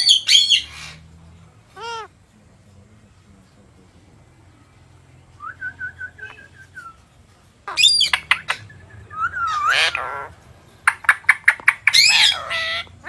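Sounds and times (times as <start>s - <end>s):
parrot chirping and squawking: 0.0s - 2.2s, 7.6s - 13.0s.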